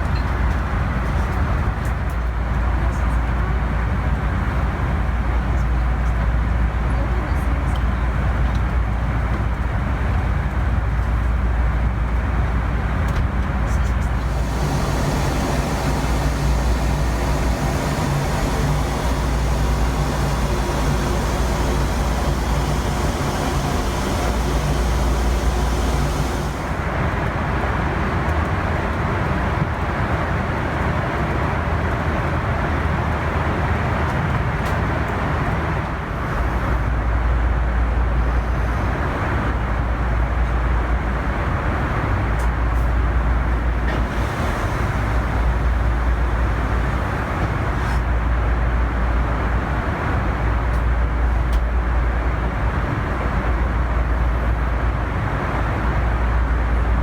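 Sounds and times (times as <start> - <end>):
airliner cabin engine rush: 12.4 - 31.2, 31.8 - 57.0
strong low hum: 14.2 - 27.0.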